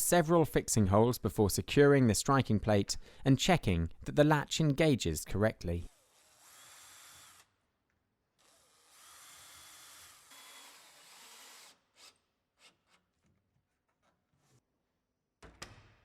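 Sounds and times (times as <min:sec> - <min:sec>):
power drill whining: 0:08.4 - 0:12.1.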